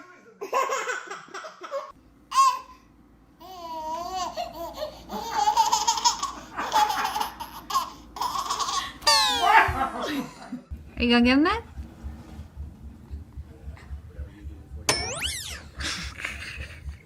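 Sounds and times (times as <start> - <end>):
baby laughing and squealing: 4.0 - 9.6.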